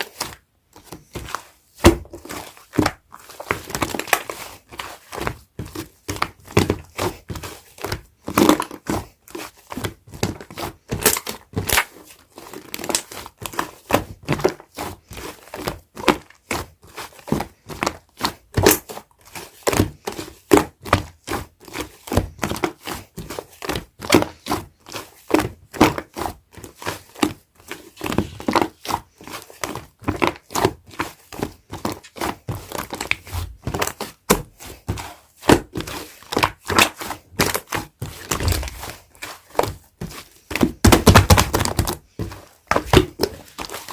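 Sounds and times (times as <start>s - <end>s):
slime squished by hand: 32.1s - 43.9s.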